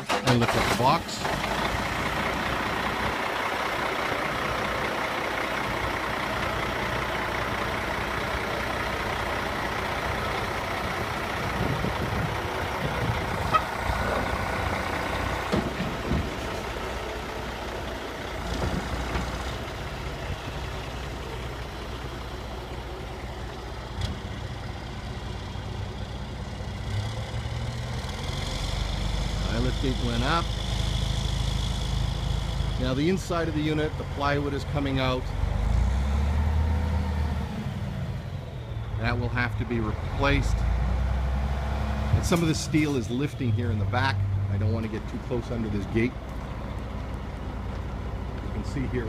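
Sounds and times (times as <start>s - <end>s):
diesel truck engine running: 0.0s - 49.0s.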